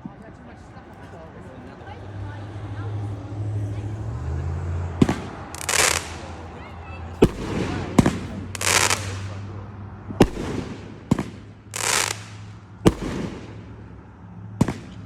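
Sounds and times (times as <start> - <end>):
fireworks bangs: 4.9 - 14.0, 14.6 - 15.0
fireworks hissing bursts: 5.0 - 6.5, 7.2 - 9.5, 10.2 - 13.8.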